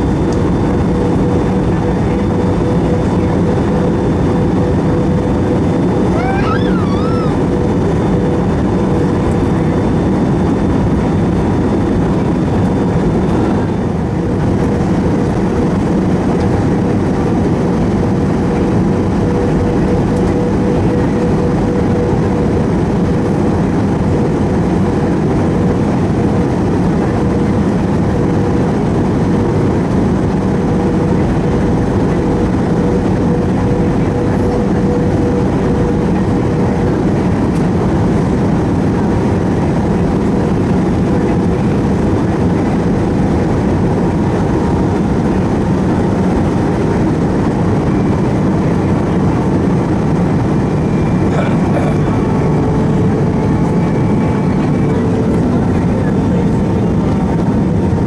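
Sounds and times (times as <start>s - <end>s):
jet engine and airflow rumble: 0.0s - 58.0s
faint steady hum: 47.5s - 57.6s.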